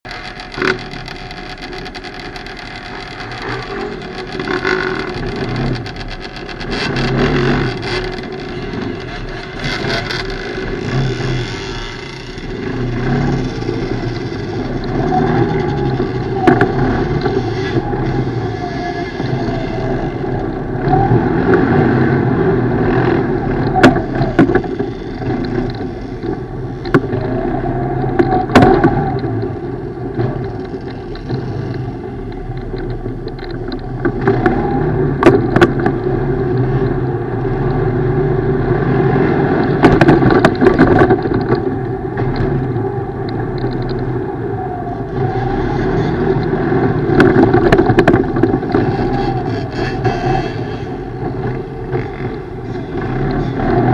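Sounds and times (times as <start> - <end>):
knocks and clatters: 0.0 - 20.8, 22.8 - 37.9, 39.5 - 42.6, 45.8 - 53.9
atv engine revving: 0.0 - 53.9.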